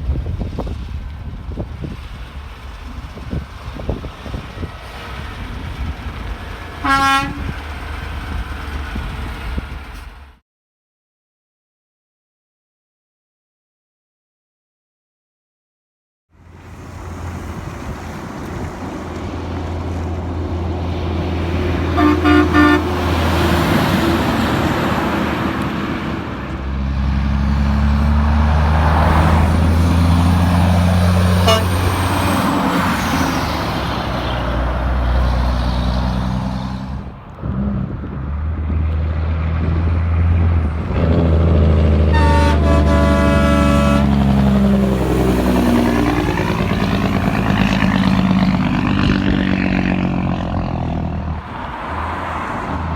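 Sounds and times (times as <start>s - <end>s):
trucks passing: 0.0s - 10.4s, 16.4s - 52.9s
multi-tone truck horn: 6.8s - 7.6s, 21.6s - 24.8s, 31.1s - 32.8s, 41.0s - 44.8s
truck horn blast: 6.8s - 7.6s, 21.6s - 24.4s, 31.2s - 32.4s, 41.1s - 44.8s.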